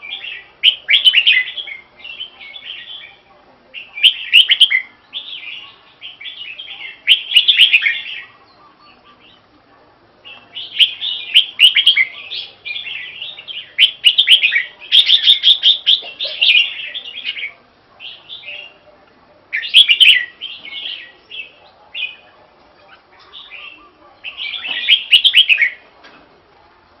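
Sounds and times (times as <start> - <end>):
bird warbling whistled song: 0.0 - 3.2, 3.8 - 9.0, 10.6 - 17.4, 19.6 - 21.1, 23.4 - 25.8.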